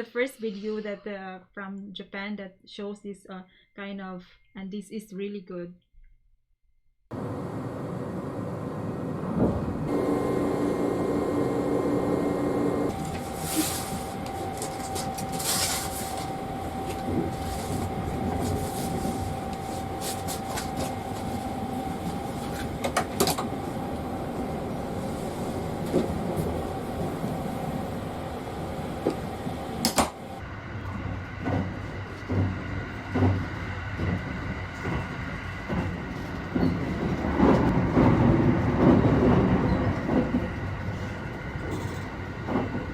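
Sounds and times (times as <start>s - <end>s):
steady whine: 7.1s - 36.4s
train running noise: 7.1s - 42.9s.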